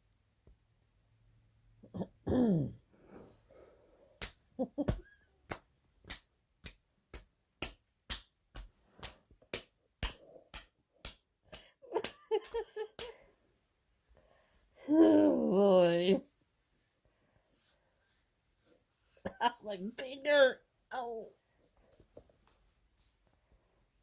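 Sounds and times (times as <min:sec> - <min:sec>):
sharp clicks or slaps: 0:04.2 - 0:13.2.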